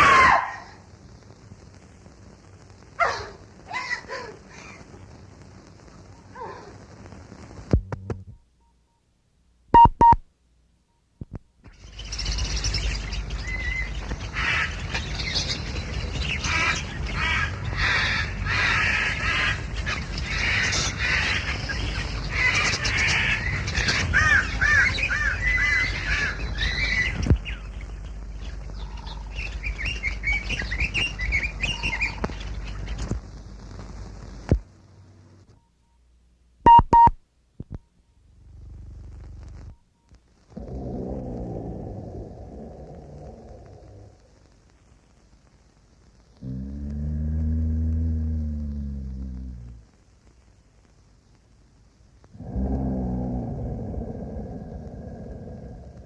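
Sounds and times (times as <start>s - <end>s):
low hum and hiss: 0.0s - 56.0s
birds chirping and warbling: 11.7s - 33.2s
short loud beeps: 36.7s - 37.2s.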